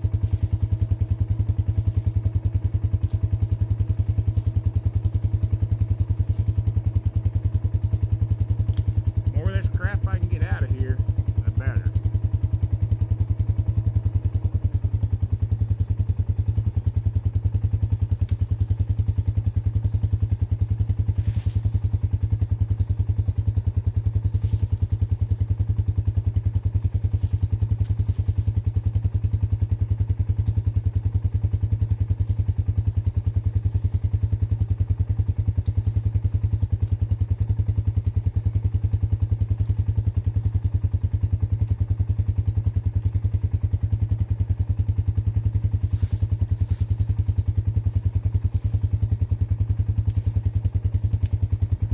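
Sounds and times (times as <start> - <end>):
atv engine idling: 0.0 - 51.9.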